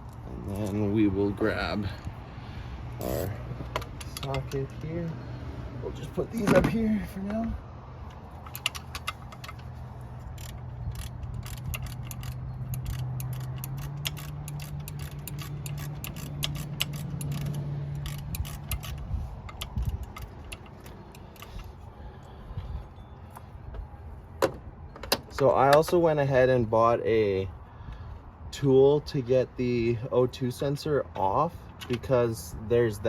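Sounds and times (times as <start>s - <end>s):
ratchet clicking: 8.3s - 21.7s.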